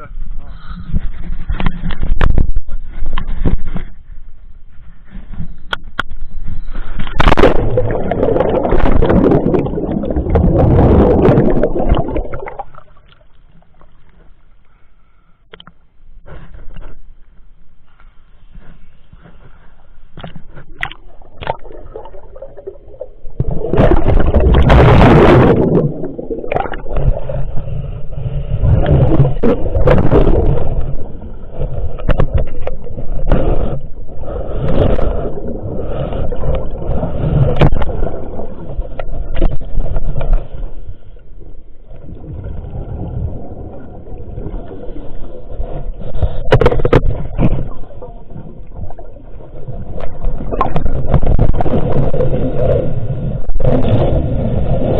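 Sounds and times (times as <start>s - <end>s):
underwater gurgling and bubbling: 6.3s - 14.0s, 20.4s - 54.9s.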